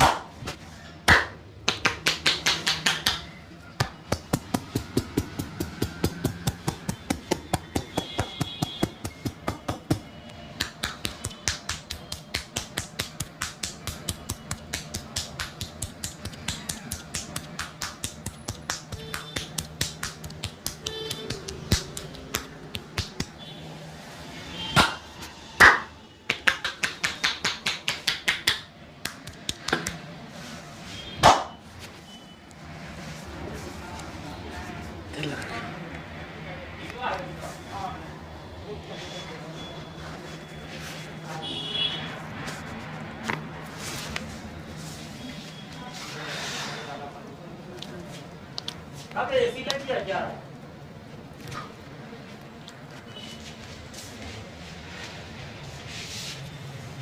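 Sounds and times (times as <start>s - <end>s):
hands striking in massage: 1.1s - 10.0s, 10.6s - 23.4s, 25.6s - 30.0s.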